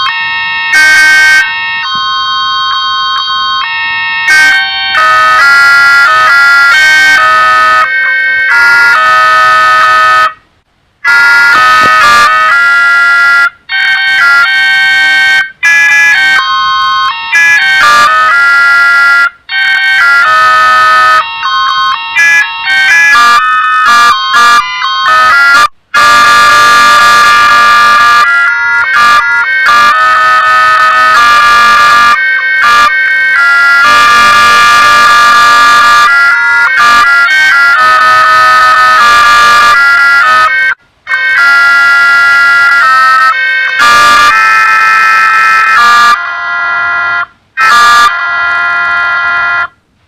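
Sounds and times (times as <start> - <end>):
distorted phone ringtone melodies: 0.0 - 5.5, 11.1 - 15.4, 16.1 - 18.3, 20.9 - 29.9.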